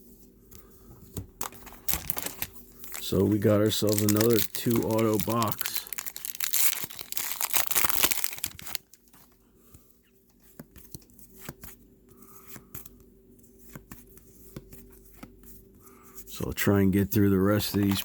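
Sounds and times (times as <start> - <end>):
wrapper tearing and crinkling: 1.4 - 9.1
cards clicking: 17.6 - 18.0.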